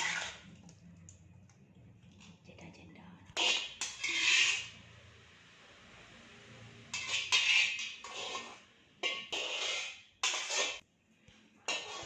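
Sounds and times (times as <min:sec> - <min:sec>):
utensils scraping and clinking on dishes: 0:00.0 - 0:00.5, 0:03.4 - 0:04.8, 0:06.9 - 0:10.8, 0:11.7 - 0:12.0.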